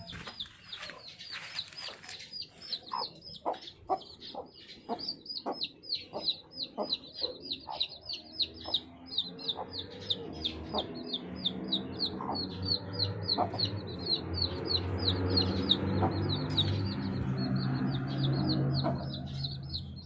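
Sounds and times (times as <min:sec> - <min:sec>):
baby chicks peeping: 0:00.0 - 0:20.0
clucking calls: 0:00.2 - 0:11.2, 0:12.0 - 0:16.7.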